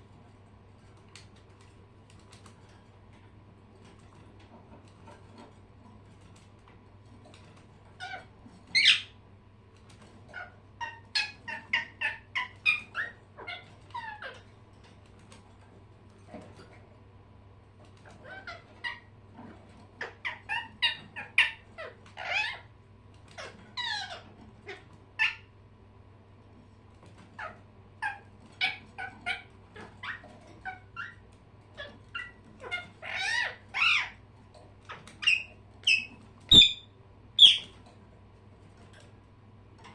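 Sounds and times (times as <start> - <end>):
pet birds chirping: 7.3 - 9.2, 9.9 - 14.6, 17.9 - 25.6, 27.2 - 37.8.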